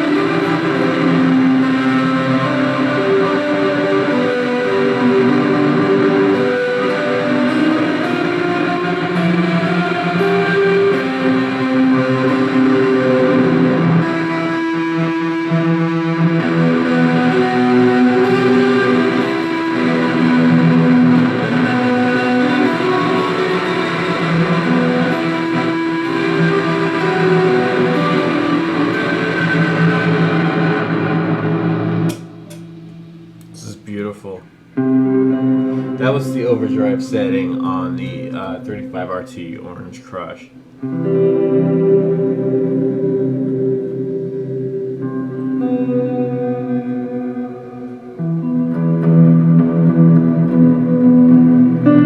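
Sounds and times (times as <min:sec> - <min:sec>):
overdriven electric guitar: 0:00.0 - 0:52.0.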